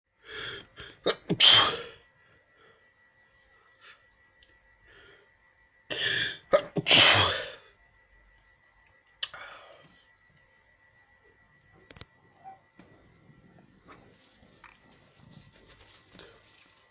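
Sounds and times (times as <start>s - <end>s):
person sneezing: 1.0s - 2.0s, 5.9s - 7.6s.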